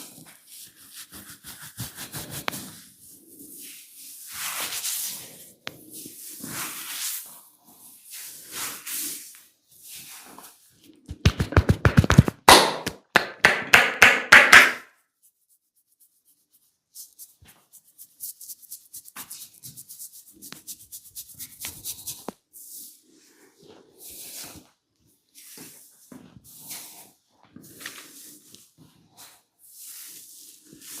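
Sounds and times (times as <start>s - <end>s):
hand rubbing: 0.5s - 3.7s, 14.3s - 22.4s
percussive massage slaps: 11.1s - 14.8s.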